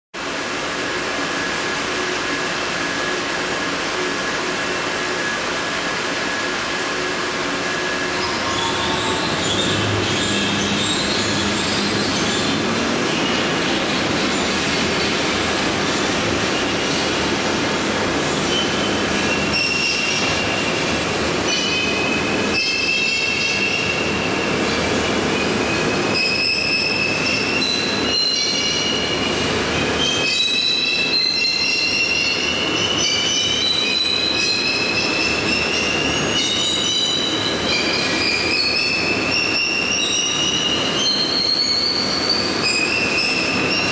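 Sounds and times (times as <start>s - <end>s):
machine running loudly: 0.2s - 40.5s.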